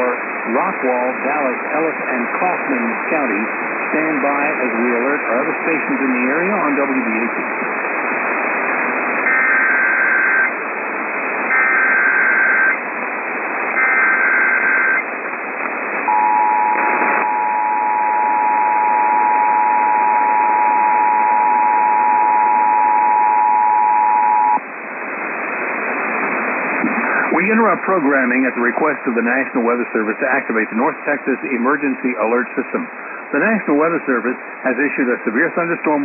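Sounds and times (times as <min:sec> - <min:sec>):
radio static: 0:00.0 - 0:36.0
static crackle: 0:00.0 - 0:36.0
two-tone attention signal: 0:16.1 - 0:24.6.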